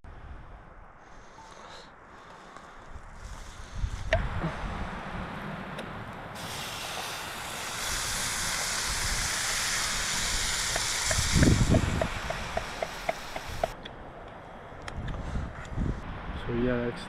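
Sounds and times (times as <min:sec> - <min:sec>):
fat crackling: 0:05.7 - 0:13.8
food frying in a pan: 0:06.4 - 0:13.8.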